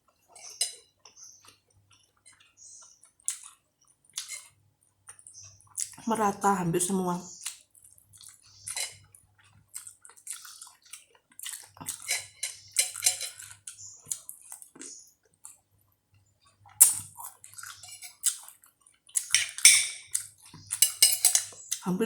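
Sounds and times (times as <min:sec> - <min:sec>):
chewing: 0:00.1 - 0:06.1, 0:07.3 - 0:21.9
spoon scraping a plate: 0:00.3 - 0:01.4, 0:08.5 - 0:09.0, 0:12.0 - 0:13.9, 0:17.7 - 0:18.2, 0:19.4 - 0:21.7.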